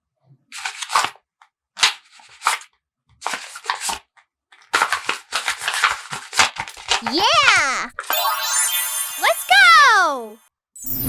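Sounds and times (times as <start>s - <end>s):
paper rustling with clicks: 0.5s - 1.2s, 1.8s - 8.1s.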